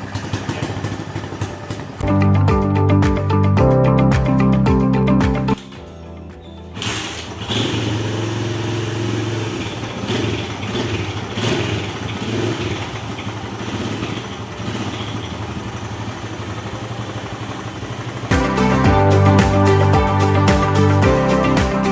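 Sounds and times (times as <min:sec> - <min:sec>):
motorcycle engine revving and idling: 0:00.0 - 0:02.0, 0:06.7 - 0:19.4.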